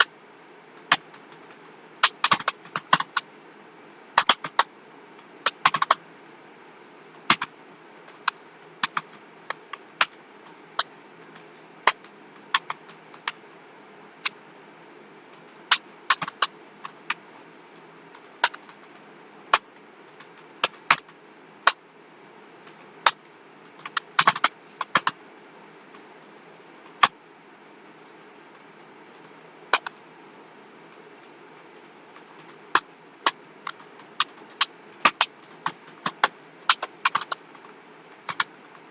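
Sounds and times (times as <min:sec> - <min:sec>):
faint steady hum: 0:00.0 - 0:38.9
keyboard keystrokes clicking: 0:00.8 - 0:03.2, 0:05.4 - 0:06.0, 0:15.7 - 0:17.0, 0:23.1 - 0:25.2, 0:32.4 - 0:37.4, 0:38.3 - 0:38.6.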